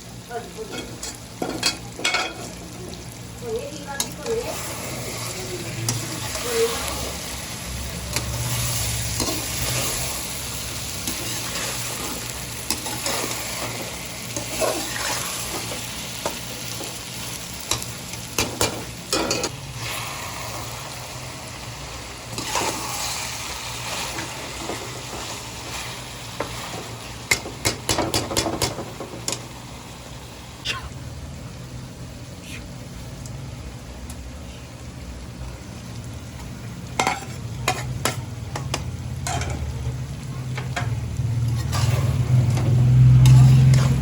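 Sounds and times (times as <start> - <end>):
chicken sizzling in a pan: 0.0 - 31.2, 33.3 - 44.0
spatula scraping a pan: 41.4 - 44.0.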